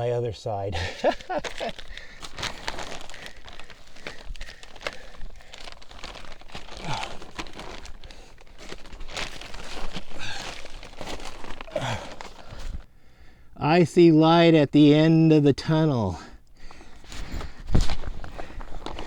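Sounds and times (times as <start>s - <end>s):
crinkling and rustling: 0.7s - 12.9s, 16.6s - 19.0s.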